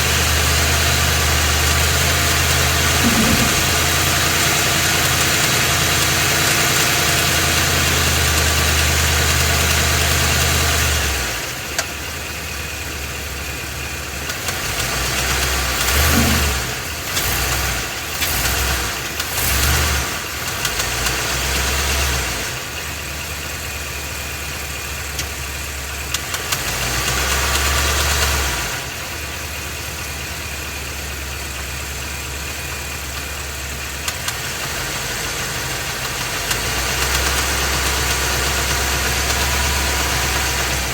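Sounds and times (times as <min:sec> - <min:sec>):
engine knocking: 0:00.0 - 0:40.9
engine running: 0:00.9 - 0:20.9.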